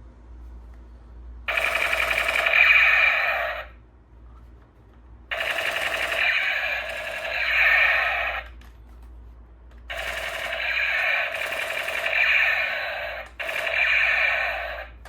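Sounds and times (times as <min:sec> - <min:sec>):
toy gun electronic firing: 0:01.5 - 0:03.8, 0:05.3 - 0:08.6, 0:09.9 - 0:15.0.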